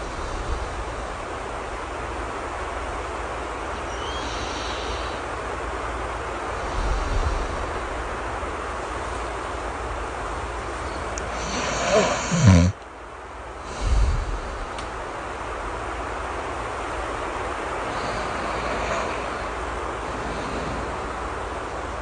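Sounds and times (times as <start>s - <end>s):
steady rain: 0.0s - 22.0s
low snore: 11.3s - 12.8s, 17.9s - 21.0s.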